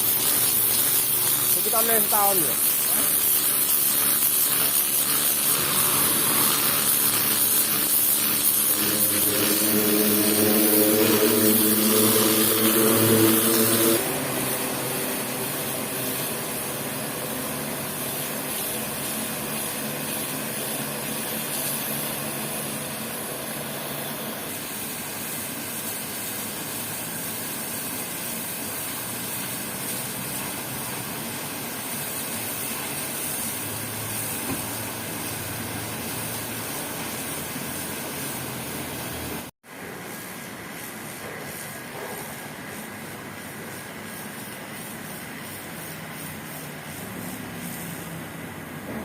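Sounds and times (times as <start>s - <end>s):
pressure washer jet hissing: 0.0s - 49.0s
machine hum: 2.5s - 19.8s.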